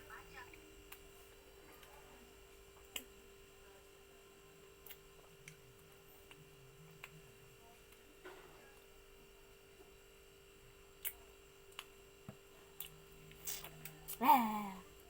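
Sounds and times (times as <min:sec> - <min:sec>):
steady electrical hum: 0:00.0 - 0:15.0.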